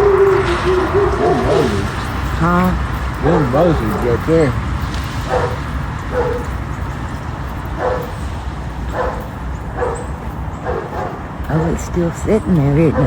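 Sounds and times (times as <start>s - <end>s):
dog barking: 0.0s - 4.6s, 5.2s - 6.7s, 7.7s - 11.4s.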